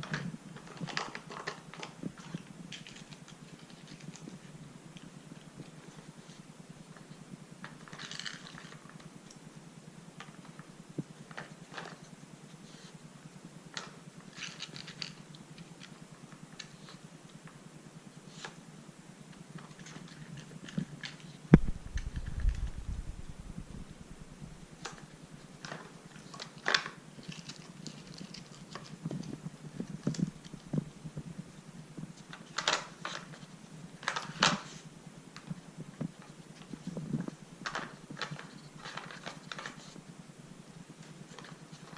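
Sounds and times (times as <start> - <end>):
steady low hum: 0.0 - 41.9
brief low rumble: 21.6 - 24.6.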